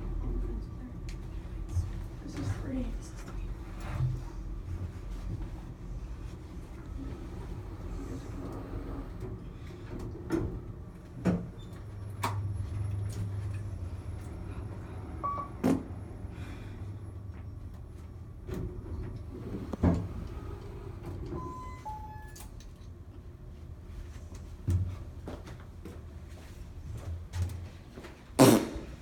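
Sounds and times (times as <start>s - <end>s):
elevator hum: 0.0s - 25.8s
short electronic beeps: 21.4s - 22.4s.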